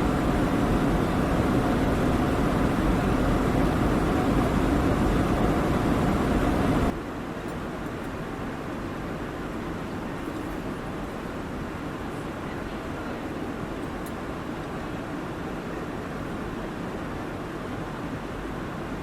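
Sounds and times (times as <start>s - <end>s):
jet cabin engine rush: 0.0s - 7.0s.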